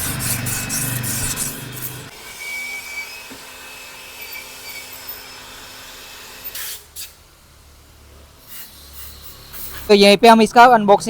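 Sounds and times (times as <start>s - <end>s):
compressed air hissing: 0.0s - 2.1s, 8.4s - 9.9s
short air blasts: 0.0s - 2.1s, 6.5s - 7.2s, 8.4s - 9.9s.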